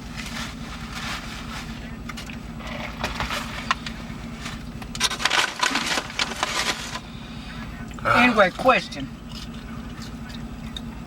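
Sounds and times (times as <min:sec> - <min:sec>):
paper bag and wrappers rustling: 0:00.0 - 0:01.9, 0:02.6 - 0:07.1
steady low hum: 0:00.0 - 0:11.0.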